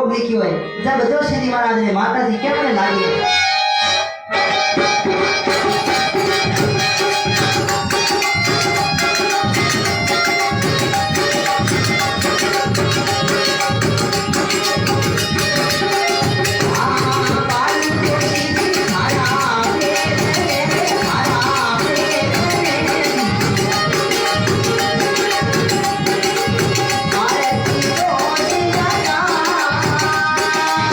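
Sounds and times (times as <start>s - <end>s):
dholak drumming: 3.2s - 30.9s
held melodic tones: 4.2s - 30.9s
jingling percussion: 5.4s - 30.9s.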